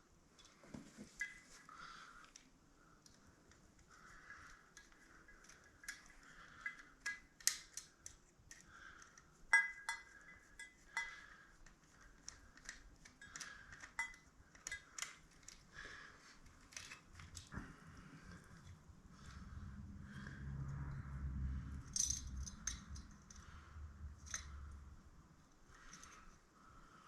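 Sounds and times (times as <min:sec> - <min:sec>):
metallic clicks and clinks: 0:04.3 - 0:11.2, 0:12.0 - 0:15.6, 0:21.7 - 0:24.8, 0:25.8 - 0:26.4.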